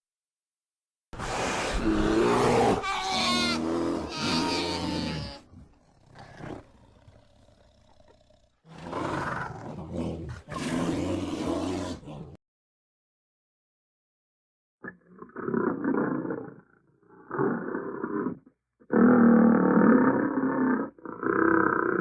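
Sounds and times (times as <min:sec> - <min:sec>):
animal roaring: 0:01.3 - 0:12.4.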